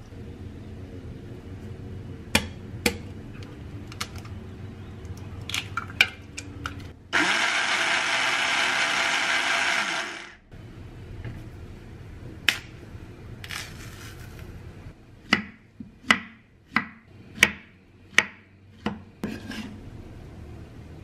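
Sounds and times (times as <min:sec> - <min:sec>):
electric blender running: 0:07.2 - 0:10.4.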